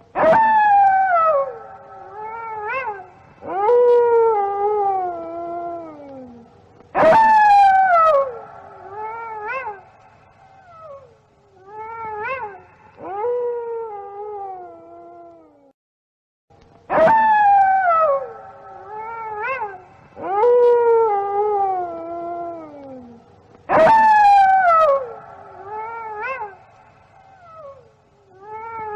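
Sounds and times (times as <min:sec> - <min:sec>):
wolves howling: 0:00.2 - 0:11.0, 0:16.9 - 0:28.9.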